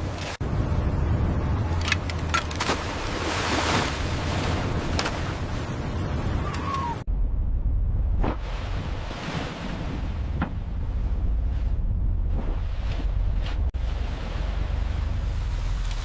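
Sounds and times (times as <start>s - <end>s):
sea noise: 0.0s - 7.1s, 7.8s - 16.0s
wind: 0.0s - 16.0s
low engine rumble: 10.0s - 16.0s.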